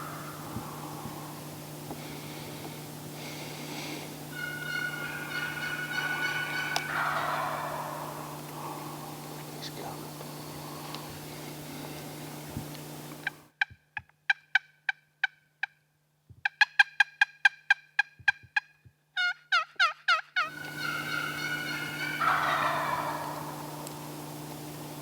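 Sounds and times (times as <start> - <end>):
turkey yelping: 0.0 - 1.5, 4.3 - 9.3, 19.2 - 23.9
turkey gobble: 0.0 - 1.6, 3.6 - 9.4, 19.2 - 24.2.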